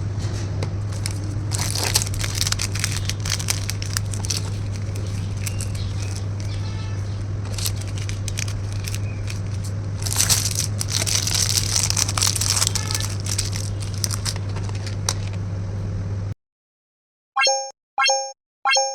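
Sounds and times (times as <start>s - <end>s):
steady low hum: 0.0s - 16.3s
plastic packaging crinkling: 0.8s - 15.4s.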